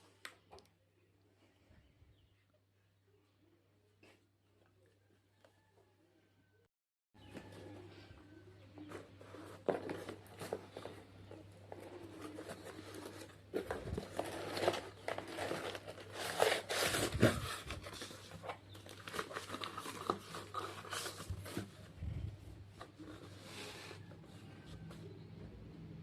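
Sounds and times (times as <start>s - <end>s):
packaging crinkling and tearing: 12.1s - 21.9s.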